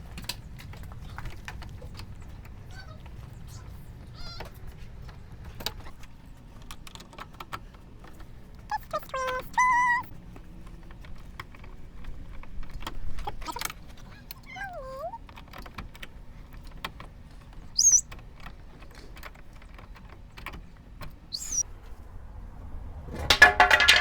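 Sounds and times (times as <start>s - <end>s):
birds chirping: 0.0s - 6.5s, 8.7s - 10.1s, 13.3s - 15.2s, 17.3s - 18.2s, 21.2s - 21.6s.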